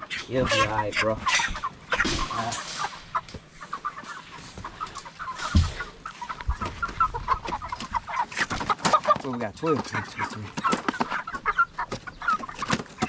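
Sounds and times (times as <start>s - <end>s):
chickens clucking: 0.0s - 13.0s
dull thump: 5.4s - 6.0s.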